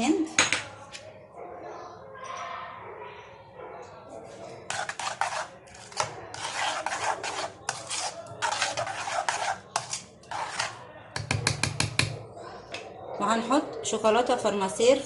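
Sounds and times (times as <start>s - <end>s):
metal spoon scraping a dish: 4.3s - 11.9s.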